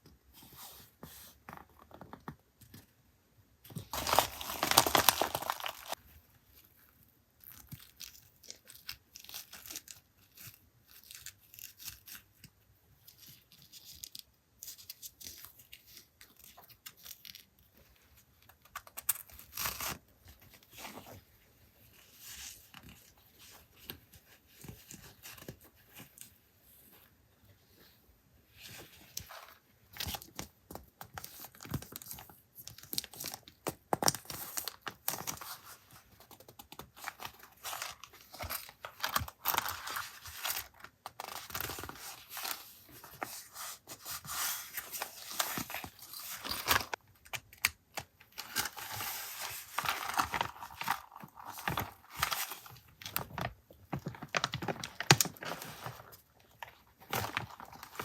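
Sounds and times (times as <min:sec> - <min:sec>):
packaging rustling and crinkling: 0:03.7 - 0:06.0, 0:28.6 - 0:58.0.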